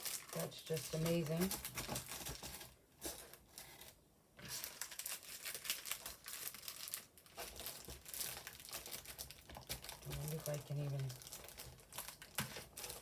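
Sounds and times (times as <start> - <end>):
packaging crinkling and rustling: 0.0 - 13.0.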